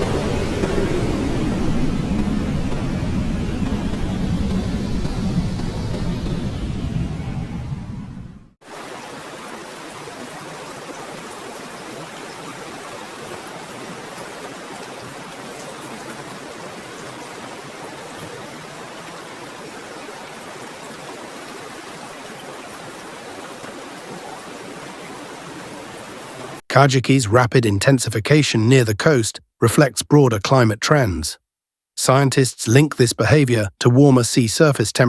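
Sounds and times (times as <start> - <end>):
rushing water: 0.0 - 5.4, 8.6 - 26.6.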